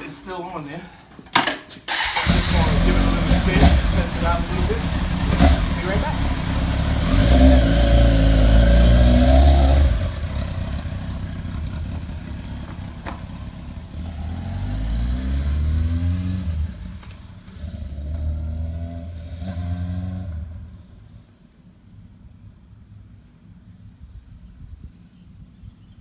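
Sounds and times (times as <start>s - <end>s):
motorcycle engine revving and accelerating: 2.0s - 20.9s.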